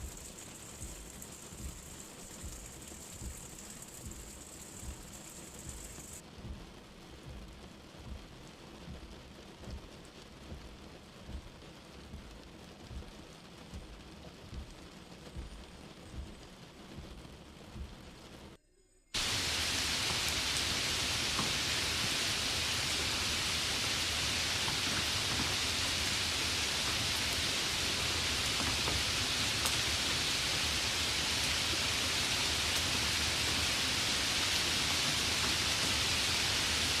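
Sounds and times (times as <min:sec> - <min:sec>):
steady rain hiss: 0:00.0 - 0:18.6, 0:19.2 - 0:37.0.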